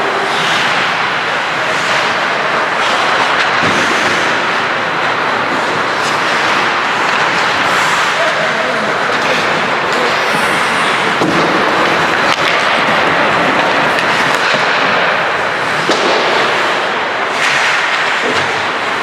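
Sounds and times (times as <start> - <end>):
hockey sticks and puck clacking: 1.8 - 19.0
skates scraping ice: 2.8 - 17.8.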